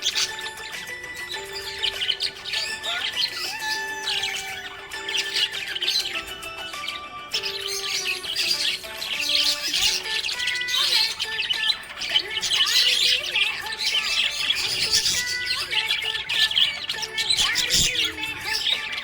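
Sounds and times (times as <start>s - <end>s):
background music: 0.0s - 19.0s
budgerigars chattering: 0.0s - 19.0s.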